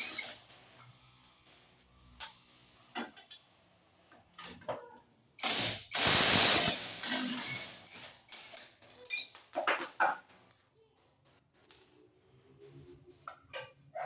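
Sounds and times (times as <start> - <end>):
ratchet wrench clicking: 5.4 - 8.7.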